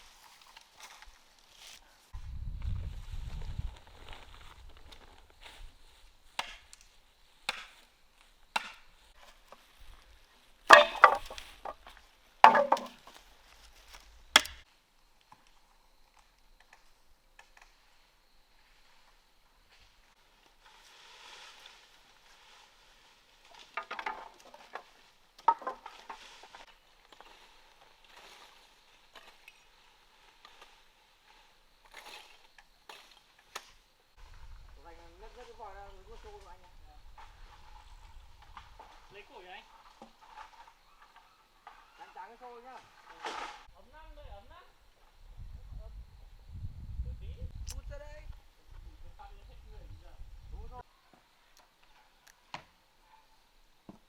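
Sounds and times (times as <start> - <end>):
chopping strikes: 10.7 - 11.5, 12.4 - 13.0
faint clicks and scrapes: 18.7 - 34.8.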